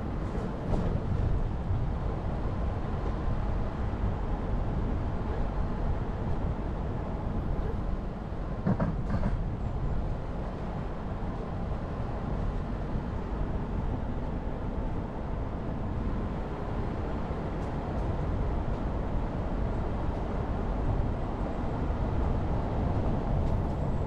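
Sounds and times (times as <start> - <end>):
engine and tyres rumbling: 0.0 - 24.0
brief knock or rattle: 8.6 - 9.4.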